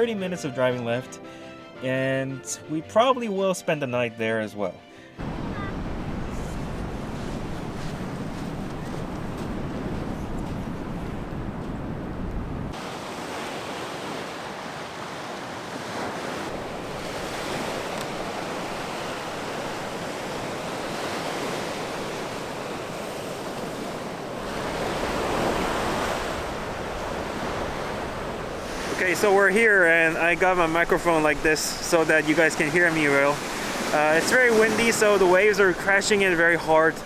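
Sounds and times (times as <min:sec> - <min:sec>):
wind buffeting microphone: 0:05.2 - 0:12.9, 0:16.4 - 0:29.4
sea waves breaking on shore: 0:05.2 - 0:37.0.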